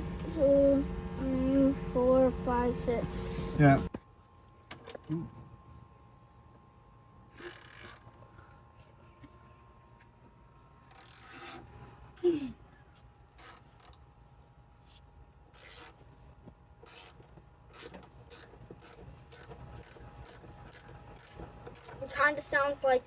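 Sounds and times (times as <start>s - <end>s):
hand tools scraping and ratcheting: 15.5s - 16.0s, 16.8s - 22.2s.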